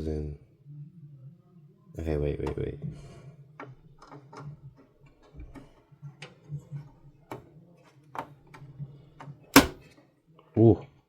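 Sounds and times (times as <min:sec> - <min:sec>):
plastic clicks and taps: 0:09.6 - 0:09.8.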